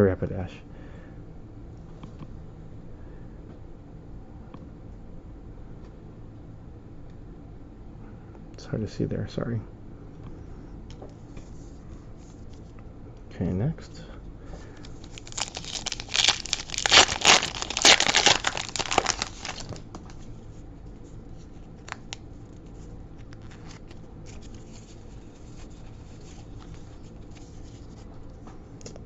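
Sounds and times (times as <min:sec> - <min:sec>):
cards rustling and clicking: 0:14.7 - 0:20.3, 0:21.4 - 0:28.0
foil pack tearing and crinkling: 0:14.8 - 0:20.2, 0:21.8 - 0:22.2.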